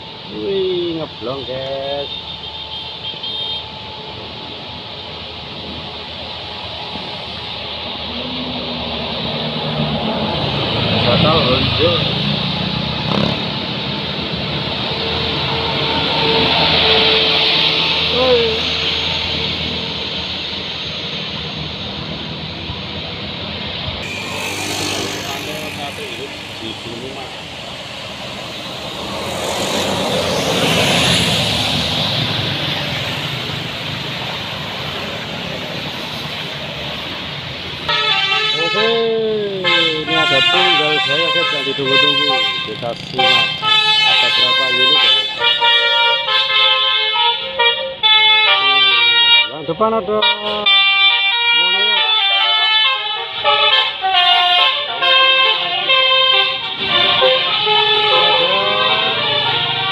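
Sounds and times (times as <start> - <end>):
bus engine rumble: 0.0 - 48.8, 53.0 - 59.9
multi-tone bus horn tune: 2.1 - 4.1, 24.0 - 29.6, 37.8 - 59.9
heavy vehicle passing: 7.0 - 37.9, 39.7 - 45.4, 56.7 - 59.9.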